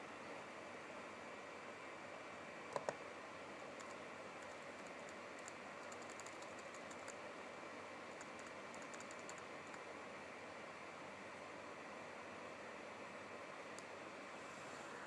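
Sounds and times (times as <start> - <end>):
steady hiss: 0.0 - 15.0
keyboard typing: 3.8 - 7.2, 8.1 - 9.9.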